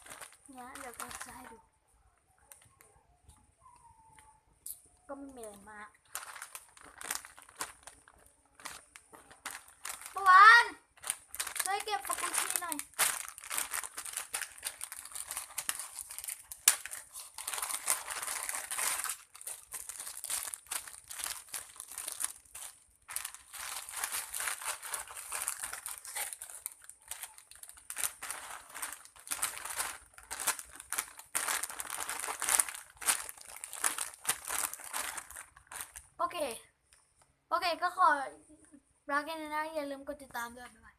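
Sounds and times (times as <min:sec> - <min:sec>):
squishy toys crinkling: 0:00.0 - 0:01.6, 0:05.1 - 0:36.2.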